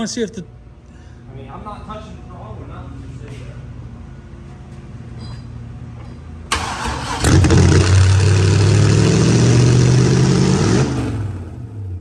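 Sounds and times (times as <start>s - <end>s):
starter motor cranking: 6.5s - 7.8s.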